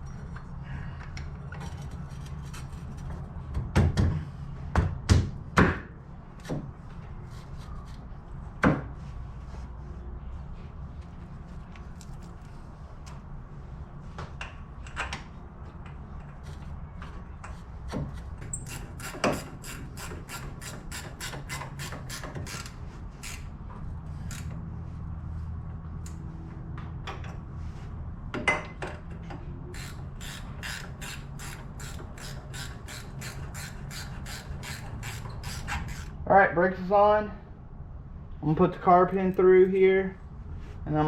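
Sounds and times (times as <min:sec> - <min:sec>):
socket ratchet clicking: 0:18.6 - 0:23.5, 0:24.2 - 0:24.5, 0:29.8 - 0:36.1.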